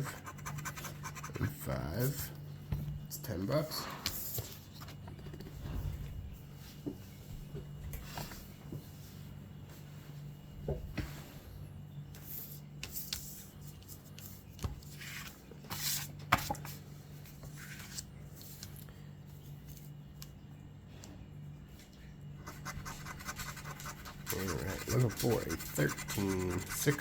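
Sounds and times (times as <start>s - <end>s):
steady low hum: 0.0s - 27.0s
paper tickets shuffled: 24.3s - 27.0s.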